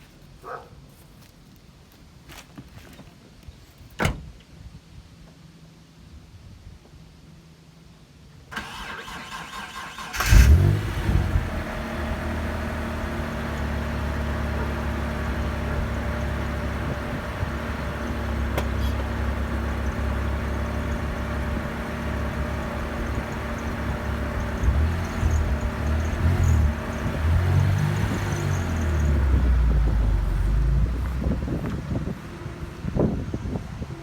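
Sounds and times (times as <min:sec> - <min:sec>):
car engine starting: 0:08.5 - 0:33.9.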